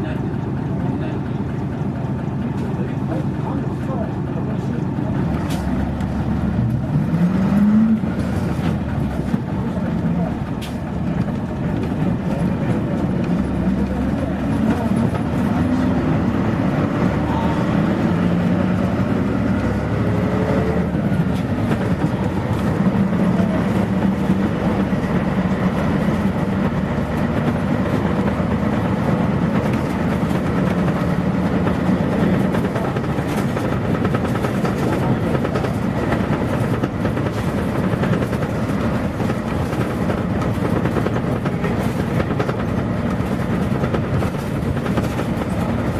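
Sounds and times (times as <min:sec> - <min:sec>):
bus diesel engine pulling: 0:00.0 - 0:45.9
road noise: 0:00.0 - 0:45.9.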